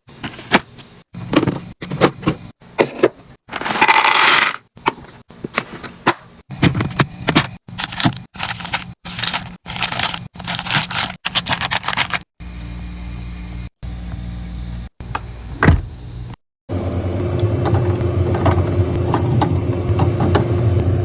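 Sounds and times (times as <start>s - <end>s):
food packaging handled and scraped: 0.0s - 4.6s, 5.5s - 12.3s
steady low hum: 4.8s - 21.0s.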